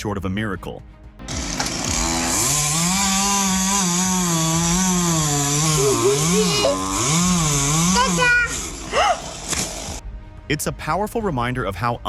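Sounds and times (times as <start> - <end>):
chainsaw cutting wood: 1.2 - 10.0.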